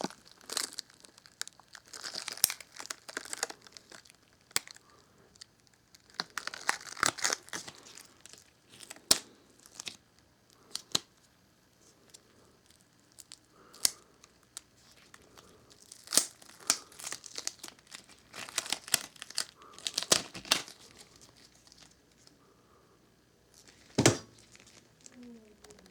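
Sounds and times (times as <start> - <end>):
crinkling and rustling handling noise: 0.0 - 22.5, 23.5 - 25.9.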